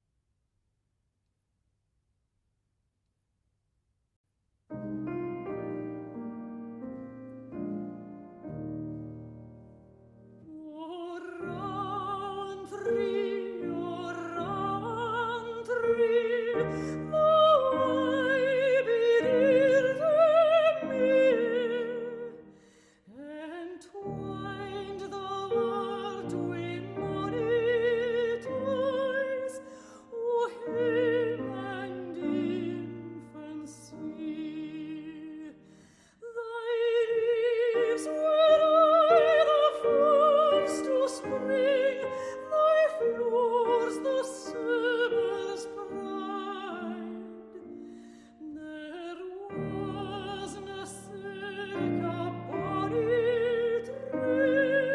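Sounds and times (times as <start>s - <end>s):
piano: 4.7s - 54.9s
operatic singing: 10.5s - 22.5s.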